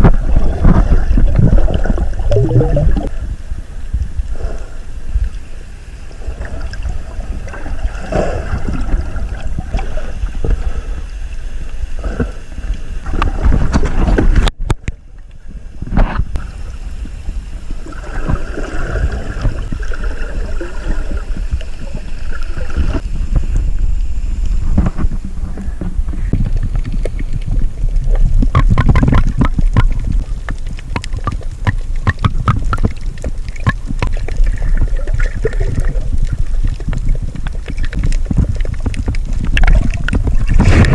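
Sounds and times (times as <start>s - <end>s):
sea water sloshing and splashing: 0.0s - 3.1s, 5.1s - 23.5s, 24.6s - 40.9s
wind buffeting microphone: 22.7s - 40.9s.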